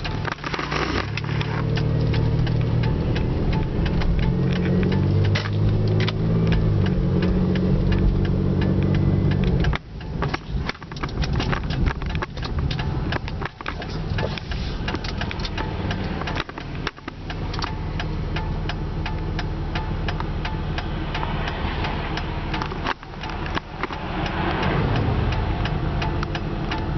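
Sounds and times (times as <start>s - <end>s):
car engine idling: 0.0s - 26.9s
low rumble: 1.1s - 9.8s, 17.4s - 26.9s.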